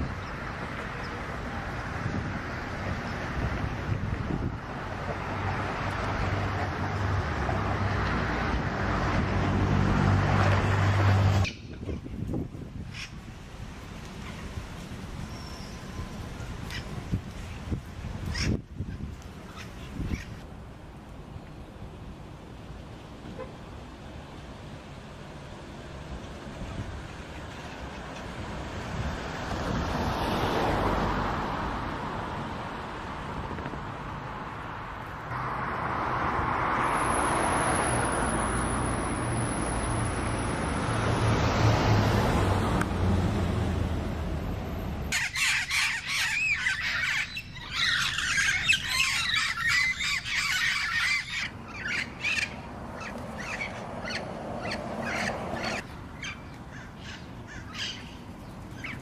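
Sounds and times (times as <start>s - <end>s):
parrots squawking and screeching: 18.2s - 18.6s, 45.1s - 59.0s.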